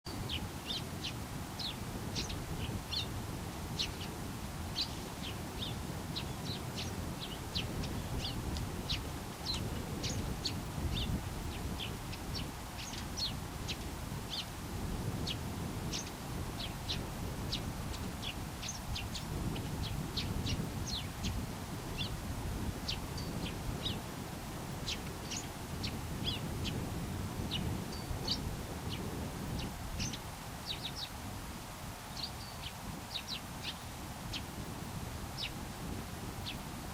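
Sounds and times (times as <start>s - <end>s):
sparrow chirping: 0.2s - 3.1s, 4.8s - 14.5s, 15.2s - 22.2s, 22.8s - 24.0s, 24.8s - 26.8s, 27.4s - 31.1s, 32.1s - 34.5s, 35.4s - 35.6s.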